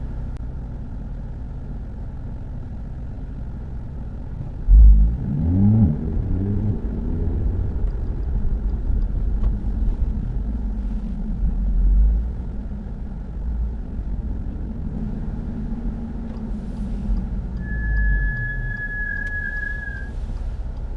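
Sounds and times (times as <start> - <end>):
car driving with low rumble: 0.0 - 20.9
high-pitched brake squeal: 17.6 - 20.2.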